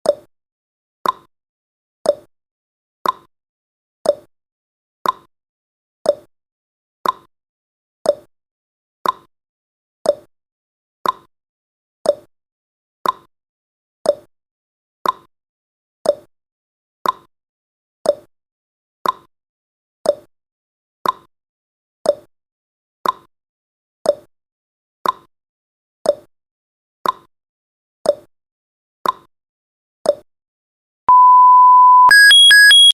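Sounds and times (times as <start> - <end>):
steady beep: 31.1 - 32.9.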